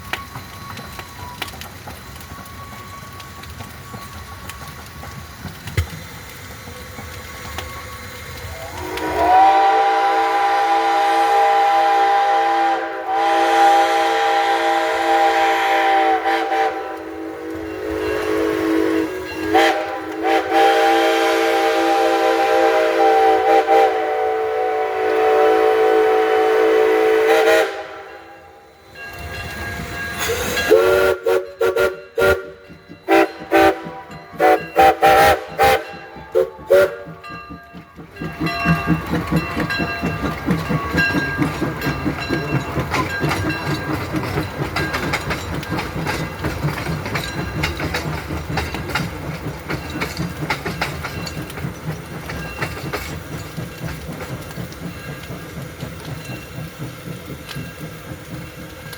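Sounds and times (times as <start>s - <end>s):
train rhythmic clatter: 0.0s - 58.9s
steam locomotive whistle: 8.4s - 28.6s, 30.1s - 37.4s.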